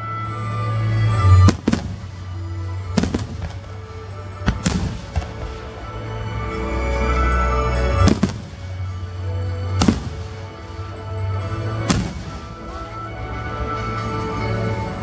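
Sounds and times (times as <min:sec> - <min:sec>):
fireworks bangs with echo: 0:01.1 - 0:05.9, 0:07.7 - 0:09.0, 0:09.7 - 0:10.7, 0:11.7 - 0:13.1.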